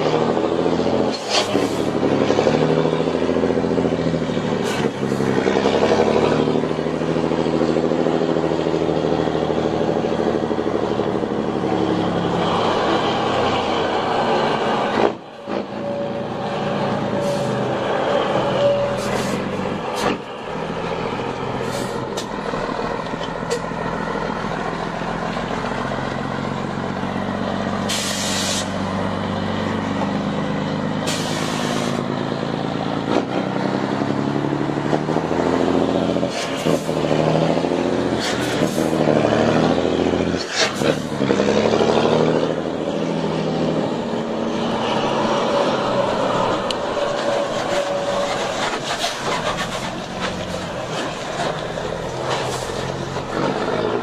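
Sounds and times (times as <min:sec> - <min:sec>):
diesel truck engine revving: 0:00.0 - 0:54.0
compressed air hisses: 0:27.9 - 0:28.7.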